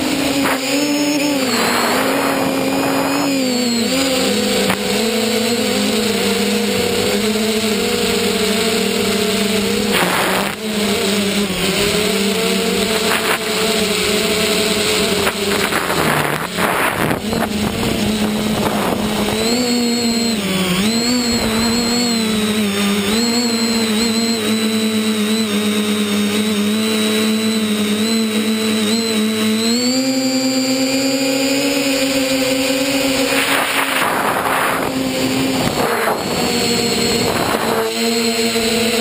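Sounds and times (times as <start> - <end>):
model aircraft propeller droning: 0.0 - 39.0
rushes of air noise: 1.2 - 4.0, 12.8 - 23.2, 33.1 - 38.0.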